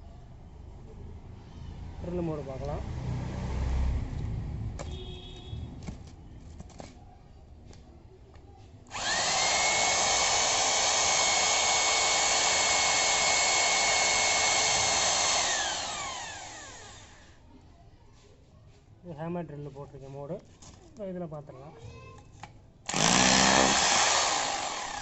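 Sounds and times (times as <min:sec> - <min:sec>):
rotary hammer motor running: 0:08.9 - 0:17.3, 0:22.9 - 0:25.0.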